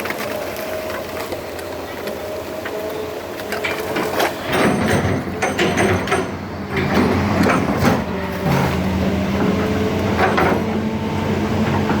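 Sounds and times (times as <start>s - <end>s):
excavator diesel engine running: 0.0s - 12.0s
metallic clanks and rattles: 3.5s - 8.8s.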